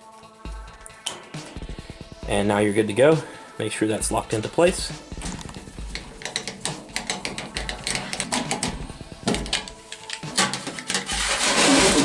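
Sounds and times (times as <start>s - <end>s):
hands handling dryer parts: 5.1s - 12.0s.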